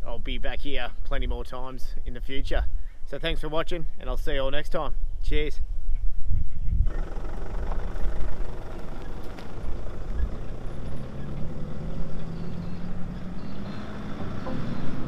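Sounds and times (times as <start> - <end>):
engine droning: 6.9 - 15.0.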